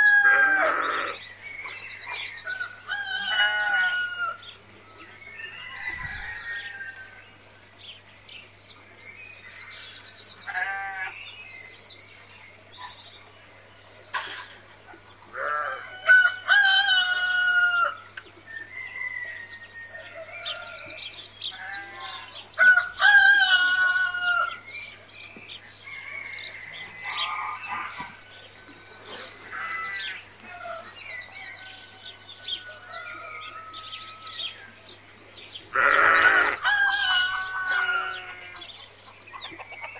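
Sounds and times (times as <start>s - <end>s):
roosters crowing: 0.0s - 7.4s, 15.3s - 24.8s, 25.7s - 34.8s, 35.7s - 38.9s
chickens chirping and clucking: 1.6s - 9.0s, 22.6s - 35.7s, 36.6s - 39.9s.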